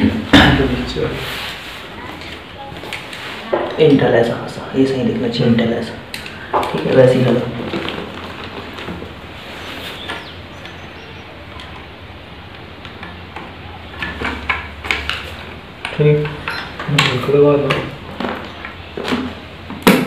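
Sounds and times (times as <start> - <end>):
person speaking: 0.0 - 7.8.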